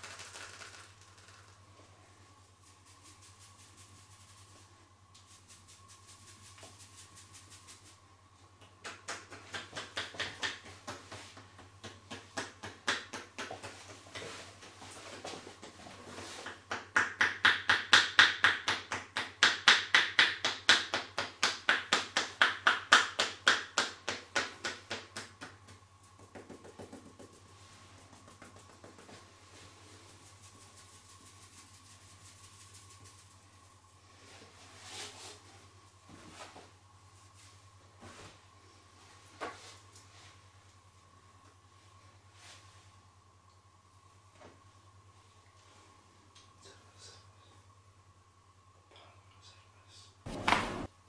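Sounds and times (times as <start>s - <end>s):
hands slapping body: 8.6s - 14.3s, 16.4s - 27.4s, 50.3s - 50.9s.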